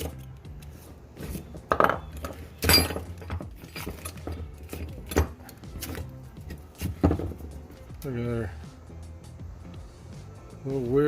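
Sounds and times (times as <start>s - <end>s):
metal hand tools clinking: 1.7s - 6.6s.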